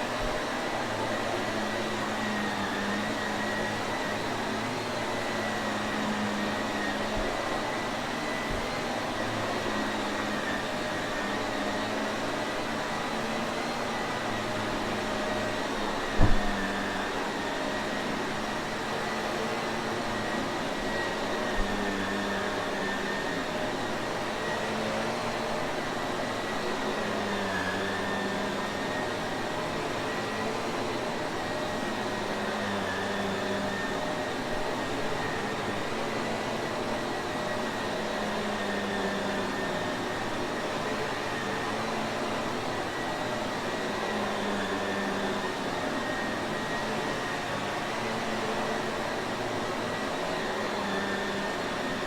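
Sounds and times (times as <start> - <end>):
vacuum cleaner running: 0.0 - 52.0
sharp thump: 16.2 - 16.5.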